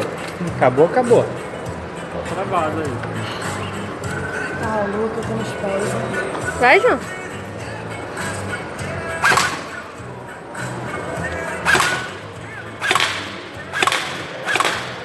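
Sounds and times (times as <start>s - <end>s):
airsoft gun firing single shots: 9.2s - 9.8s, 11.7s - 12.1s, 12.8s - 15.0s.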